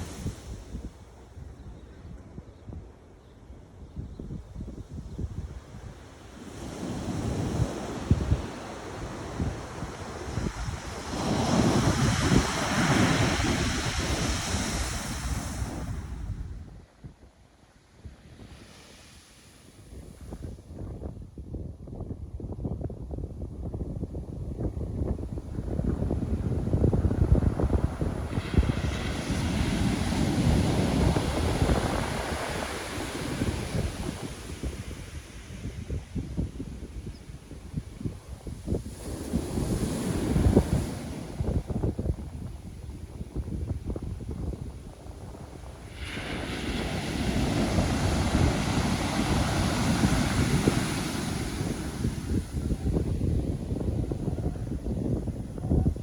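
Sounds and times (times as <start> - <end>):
wind buffeting microphone: 0.0 - 17.3, 19.8 - 56.0
ocean wave breaking on shore: 6.4 - 16.3, 26.4 - 36.1, 38.4 - 42.0, 45.0 - 54.2.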